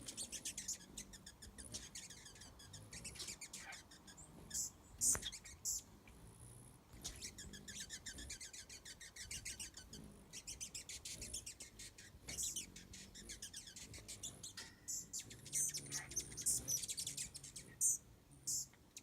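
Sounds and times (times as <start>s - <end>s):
hummingbirds chattering: 0.0s - 19.0s.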